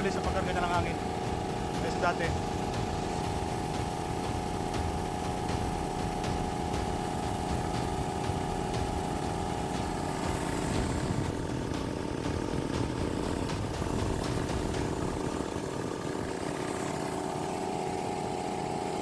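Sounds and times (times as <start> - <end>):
air compressor running: 0.0 - 19.0.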